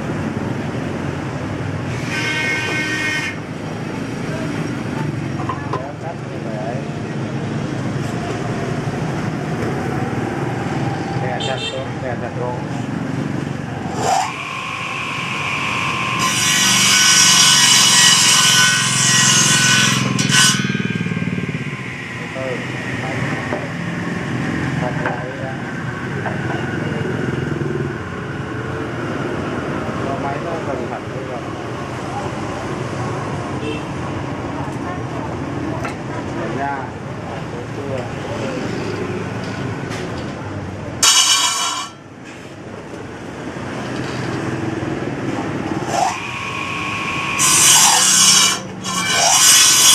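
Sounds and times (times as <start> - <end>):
saw cutting wood: 1.9 - 3.5, 13.6 - 25.4, 41.0 - 42.0, 45.4 - 49.9
woodworking machine running: 13.5 - 25.4, 45.4 - 49.9
electric saw motor whine: 13.8 - 24.9, 45.8 - 49.9.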